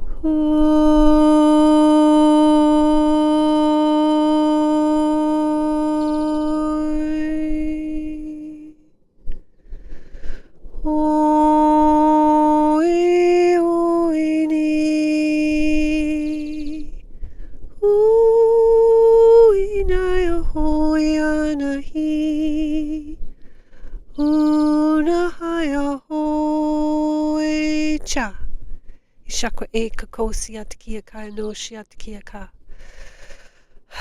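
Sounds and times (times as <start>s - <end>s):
woman singing sustained notes: 0.0s - 8.8s, 10.8s - 17.0s, 17.8s - 23.3s, 24.1s - 28.1s
woman breathing: 9.4s - 10.8s, 17.0s - 17.8s, 23.3s - 24.1s, 28.7s - 29.2s, 32.6s - 34.0s.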